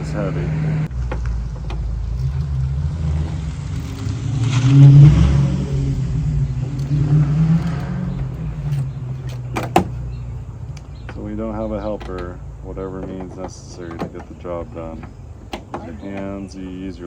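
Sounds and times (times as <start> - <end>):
car engine revving: 0.0 - 11.7.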